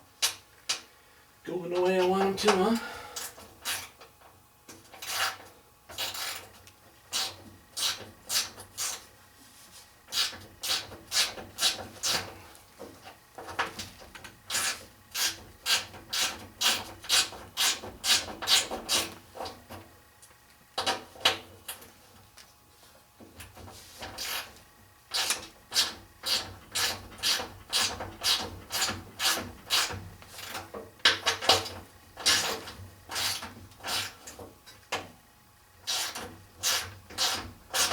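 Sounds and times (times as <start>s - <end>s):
hand file rasping on metal: 25.1s - 30.6s, 32.2s - 34.2s, 35.8s - 37.9s.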